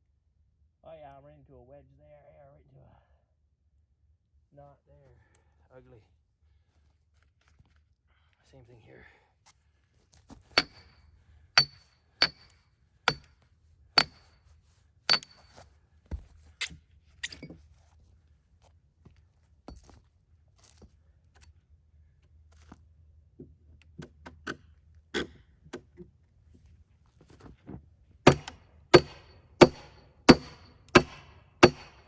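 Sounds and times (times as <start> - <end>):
hammer striking steel wedge: 10.6 - 11.0, 11.6 - 12.5, 13.1 - 13.3, 14.0 - 14.3, 15.1 - 15.4, 28.3 - 32.0.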